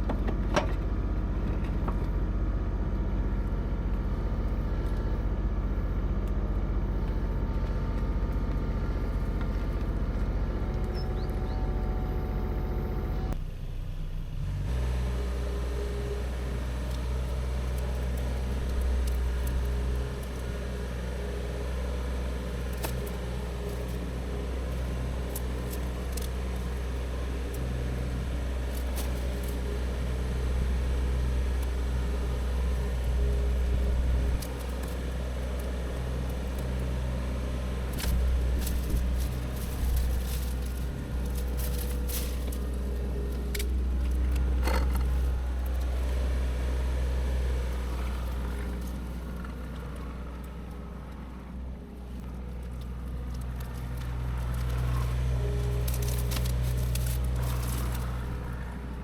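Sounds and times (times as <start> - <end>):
heavy machine engine rumbling: 0.0 - 59.0
brush and branches snapping: 16.0 - 51.4, 52.0 - 58.8.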